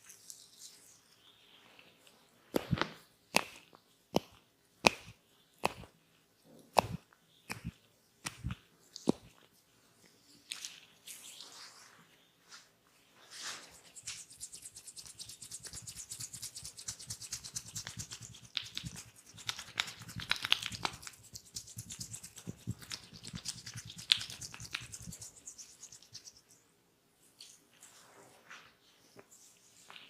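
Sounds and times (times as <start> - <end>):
fast scratching with crackles: 13.4 - 26.6.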